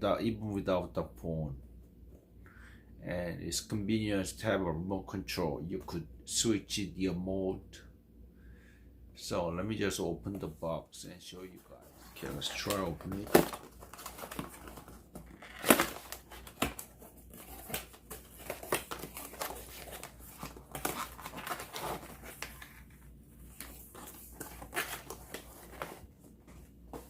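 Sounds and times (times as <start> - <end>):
packaging rustling and crinkling: 11.6 - 27.0.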